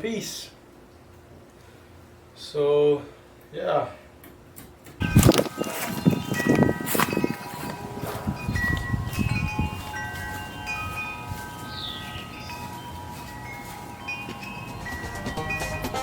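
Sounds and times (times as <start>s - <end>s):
rustling: 5.0s - 15.2s
chime-like ringing tones: 5.0s - 16.0s.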